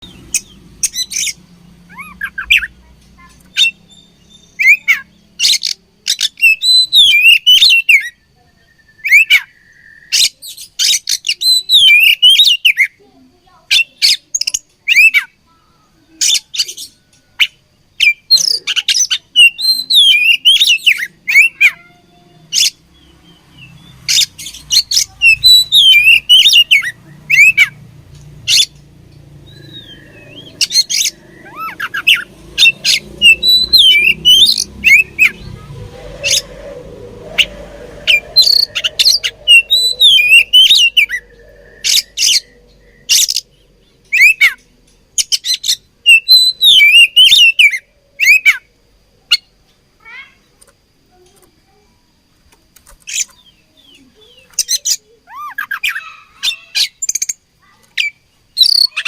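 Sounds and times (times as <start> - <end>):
bird singing: 0.0 - 59.0.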